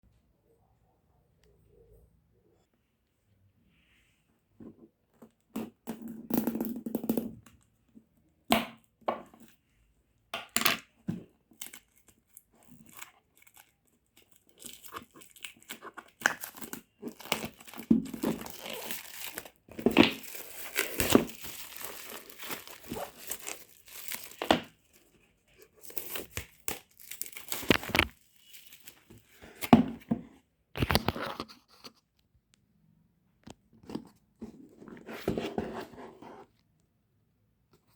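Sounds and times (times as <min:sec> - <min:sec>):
packaging ripping and rustling: 0:11.6 - 0:25.0, 0:25.6 - 0:29.4.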